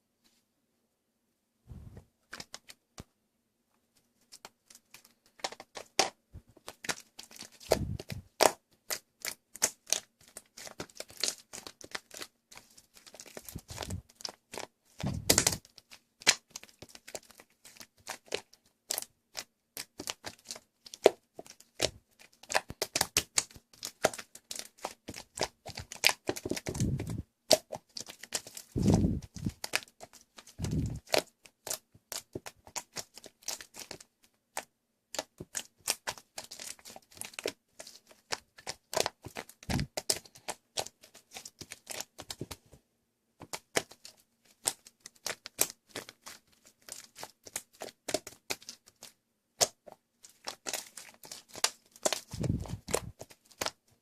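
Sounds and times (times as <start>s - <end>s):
slime crackling and popping: 4.4s - 42.6s, 43.4s - 53.8s
slime squelching thuds: 7.6s - 8.5s, 13.5s - 14.1s, 15.0s - 15.6s, 25.8s - 27.2s, 28.8s - 29.6s, 30.6s - 31.2s, 39.7s - 40.1s, 52.1s - 53.2s
soft thumps: 15.0s - 15.6s.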